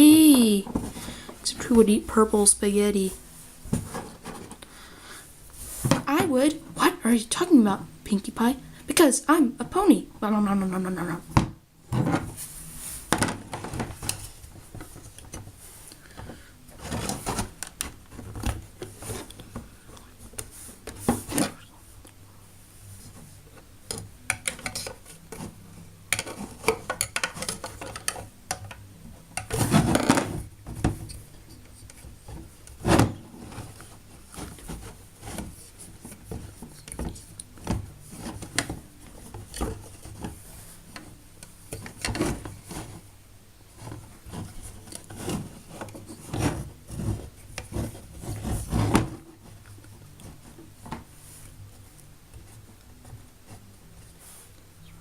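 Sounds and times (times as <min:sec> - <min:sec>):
plastic clattering: 0:13.1 - 0:19.7, 0:23.8 - 0:43.1
plastic tools clicking and rubbing: 0:13.1 - 0:22.2, 0:23.0 - 0:43.1, 0:43.7 - 0:54.7.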